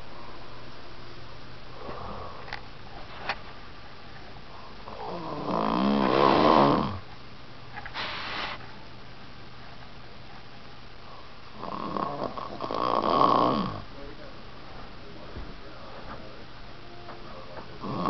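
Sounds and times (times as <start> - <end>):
soft breathing: 1.8 - 3.4
man snoring: 4.9 - 7.0, 11.6 - 13.8, 17.8 - 18.0.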